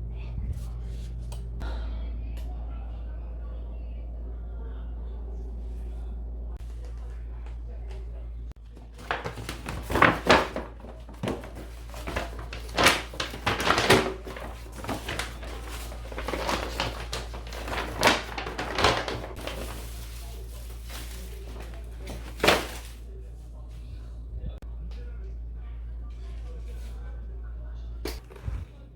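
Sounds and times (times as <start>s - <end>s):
food containers clattering in refrigerator: 8.6s - 23.2s.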